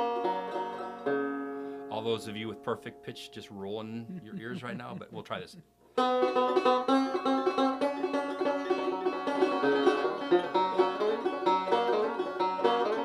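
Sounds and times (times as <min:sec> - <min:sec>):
banjo plucked notes: 0:00.0 - 0:13.0.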